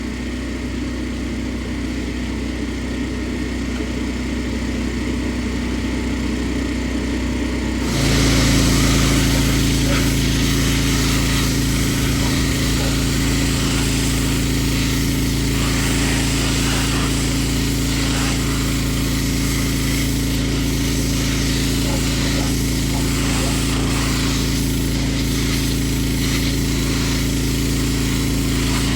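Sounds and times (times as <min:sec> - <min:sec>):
pressure washer running: 0:00.0 - 0:28.9
hissing water spray: 0:07.8 - 0:28.9.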